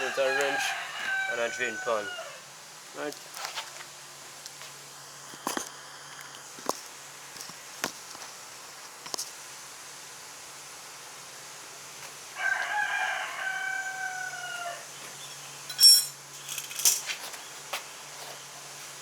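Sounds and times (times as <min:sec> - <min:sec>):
rooster crowing: 0:00.0 - 0:02.5, 0:12.4 - 0:15.0
sharp clink: 0:15.7 - 0:16.2.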